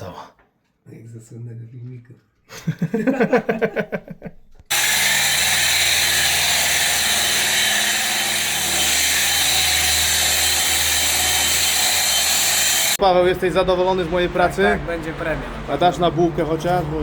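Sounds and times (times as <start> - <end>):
power drill running: 4.7 - 13.0.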